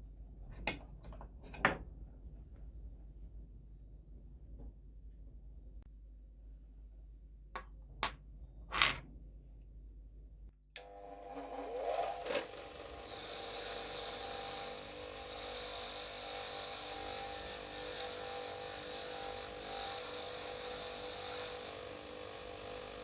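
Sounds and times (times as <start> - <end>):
power tool abrading metal: 10.8 - 23.0.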